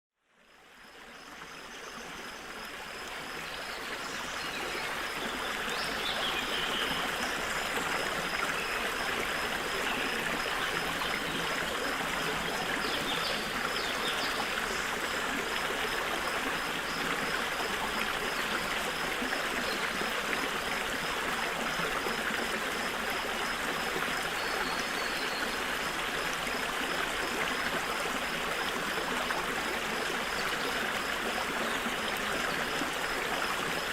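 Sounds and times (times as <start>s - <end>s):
stream flowing: 0.4s - 33.9s.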